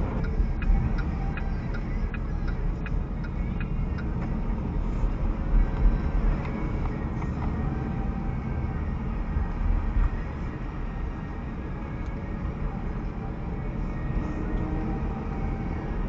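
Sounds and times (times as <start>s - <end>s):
light regular ticking: 0.0s - 7.5s
road and engine rumble: 0.0s - 16.0s.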